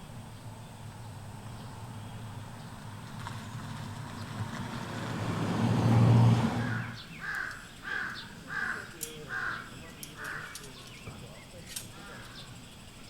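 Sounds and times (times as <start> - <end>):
car passing: 0.3 - 7.8
crow cawing: 6.6 - 10.8, 11.9 - 12.5.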